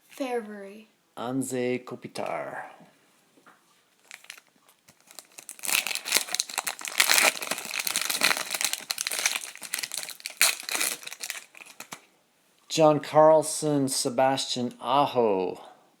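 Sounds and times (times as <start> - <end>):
foil wrapper crinkling and tearing: 4.0 - 12.0.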